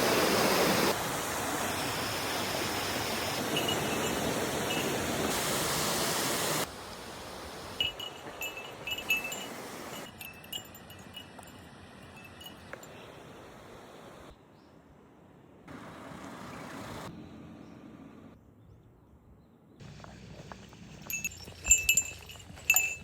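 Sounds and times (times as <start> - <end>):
steady outdoor hiss: 0.0 - 17.3, 19.8 - 23.0
small bell tinkling: 3.4 - 5.3, 7.8 - 13.0, 21.0 - 23.0.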